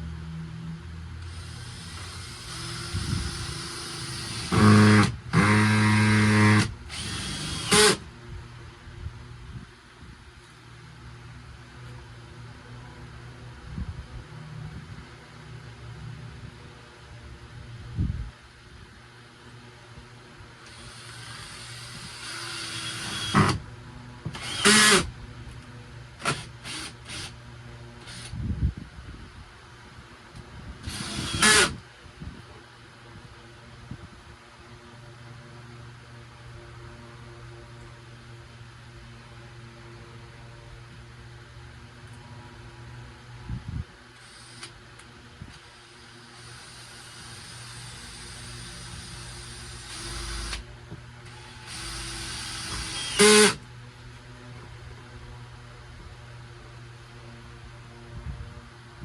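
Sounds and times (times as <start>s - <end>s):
power drill motor: 1.2s - 8.0s, 20.6s - 23.6s, 24.3s - 25.1s, 26.2s - 27.4s, 28.0s - 28.3s, 30.8s - 31.8s, 44.2s - 53.6s.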